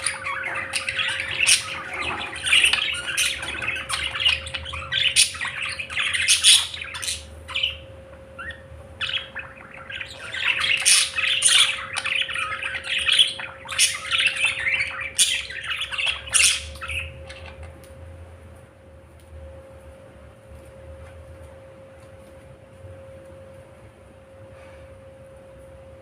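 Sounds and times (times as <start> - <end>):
budgerigars chattering and squawking: 0.0 - 17.8.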